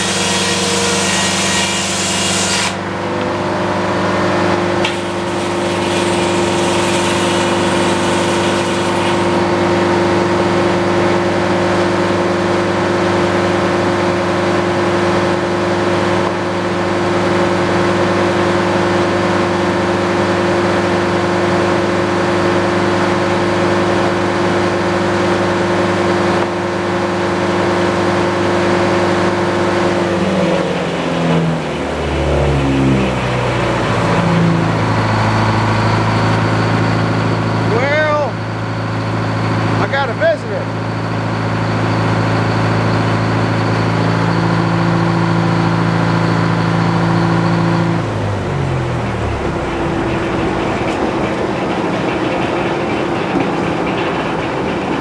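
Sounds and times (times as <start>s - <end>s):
sawmill engine running: 0.0s - 55.0s
circular saw blade spinning: 4.5s - 10.1s, 48.5s - 55.0s.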